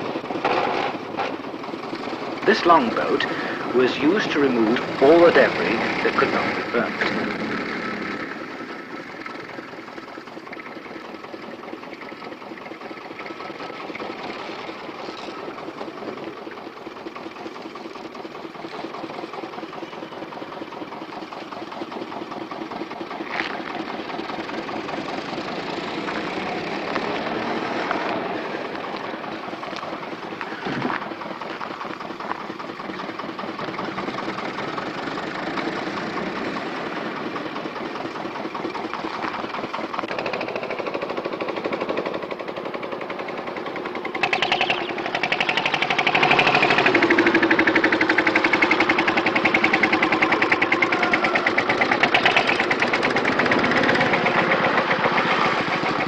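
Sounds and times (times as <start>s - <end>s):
small machine clattering: 28.8s - 56.0s.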